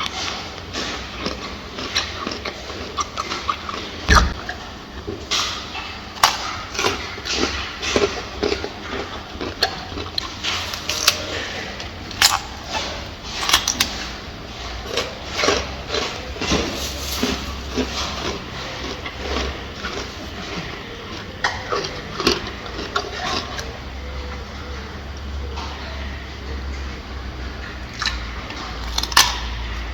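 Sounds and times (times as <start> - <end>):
gorilla chewing food: 0.0 - 29.9.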